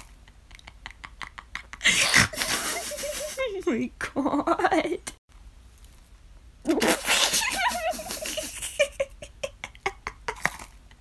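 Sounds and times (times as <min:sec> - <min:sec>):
person laughing: 0:00.3 - 0:03.6, 0:06.7 - 0:11.0.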